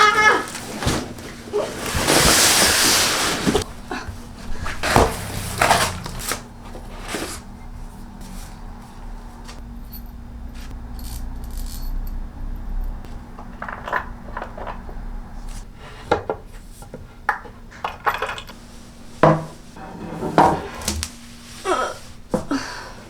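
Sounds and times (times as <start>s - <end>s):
kitchenware clinking: 17.3s - 18.6s.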